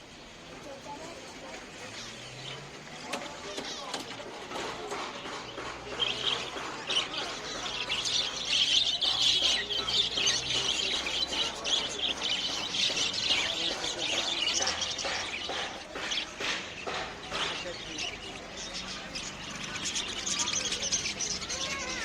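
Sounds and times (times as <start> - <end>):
caged birds chirping: 0.0 - 22.0.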